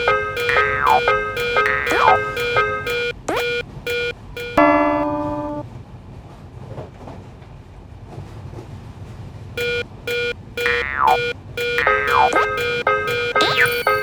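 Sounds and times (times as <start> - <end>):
railroad crossing bell dinging: 0.0 - 5.6, 9.6 - 14.0.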